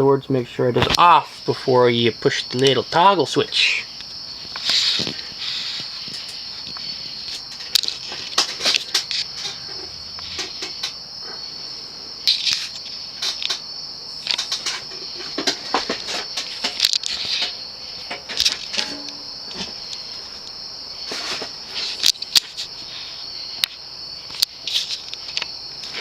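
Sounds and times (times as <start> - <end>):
cricket chirring: 0.0 - 26.0
sharp clicks and knocks: 6.1 - 11.0, 12.3 - 20.0.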